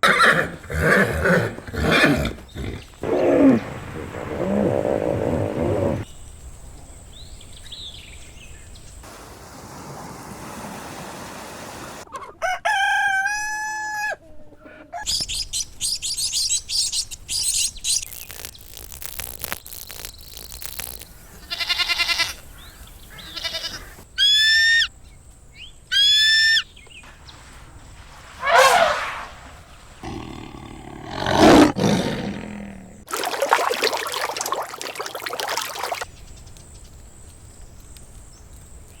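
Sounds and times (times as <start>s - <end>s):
rooster crowing: 12.4s - 14.2s.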